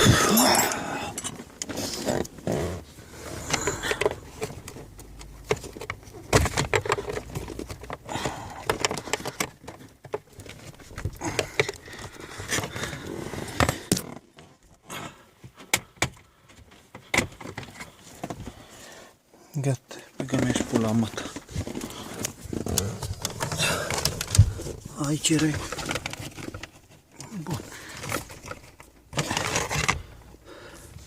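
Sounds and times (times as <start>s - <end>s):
tools clicking on plastic parts: 3.4s - 14.2s.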